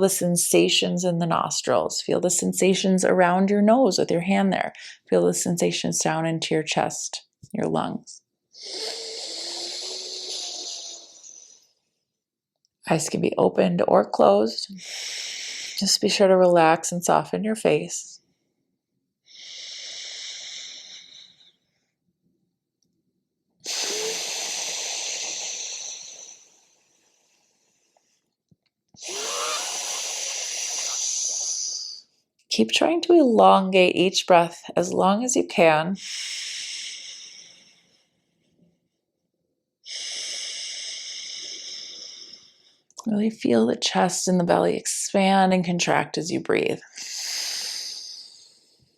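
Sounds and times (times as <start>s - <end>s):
airy breaths through nostril: 23.6s - 28.3s, 29.0s - 31.8s, 46.9s - 48.9s.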